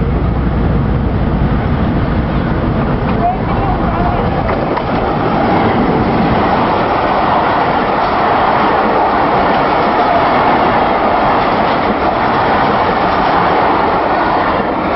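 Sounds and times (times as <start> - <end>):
train rumbling past: 0.0 - 14.9.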